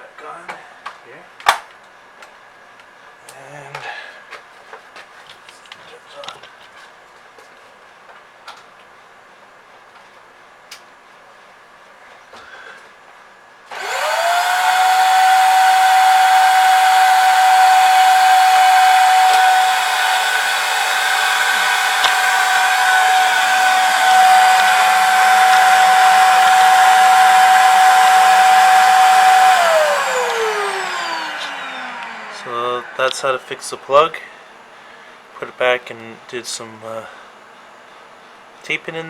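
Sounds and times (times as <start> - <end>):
vacuum cleaner motor whine: 13.7 - 34.2.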